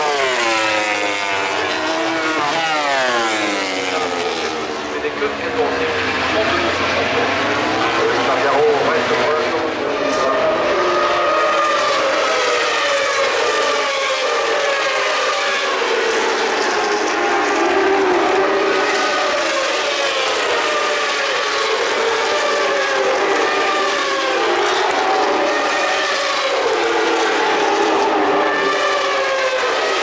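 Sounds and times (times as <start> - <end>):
racing motorcycle engines: 0.0 - 30.0.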